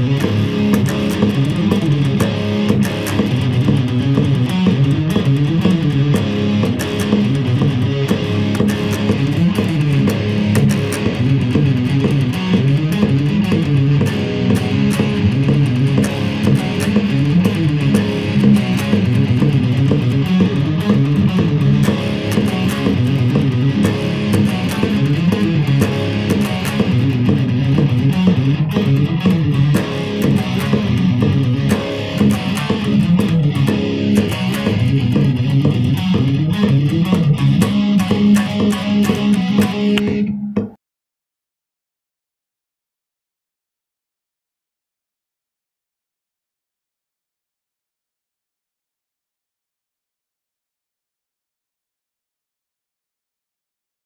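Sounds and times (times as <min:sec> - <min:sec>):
electric guitar strumming chords: 0:00.0 - 0:40.8.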